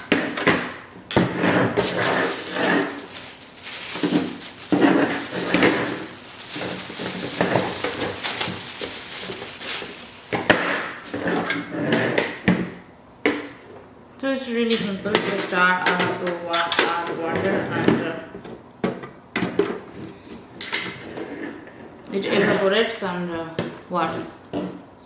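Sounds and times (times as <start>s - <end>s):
plastic parts rustling: 0.4s - 11.6s.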